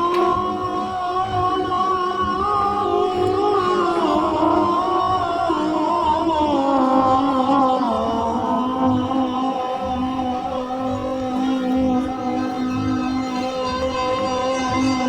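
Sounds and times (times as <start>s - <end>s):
person singing folk song: 0.0s - 15.0s.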